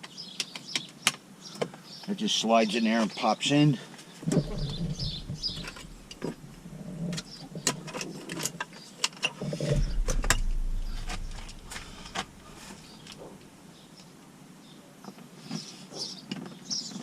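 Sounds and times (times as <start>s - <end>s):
low rumble: 4.3s - 7.9s, 9.7s - 13.6s.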